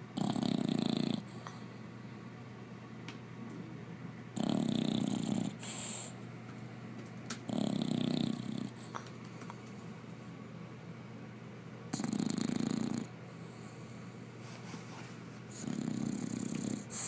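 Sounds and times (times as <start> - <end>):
puppy snoring: 0.0 - 1.8, 4.3 - 6.2, 7.3 - 9.1, 11.9 - 14.0, 15.5 - 17.0.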